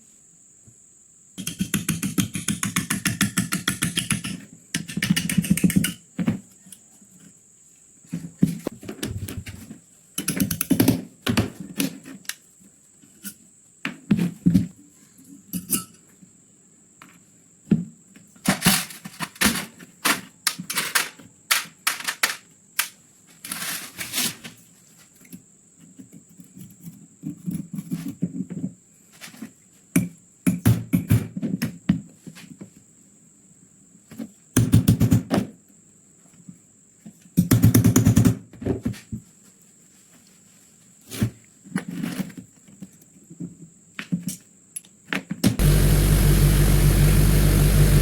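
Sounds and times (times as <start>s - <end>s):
faint high whine: 45.6s - 48.0s
fast buzzing rattle: 45.6s - 48.0s.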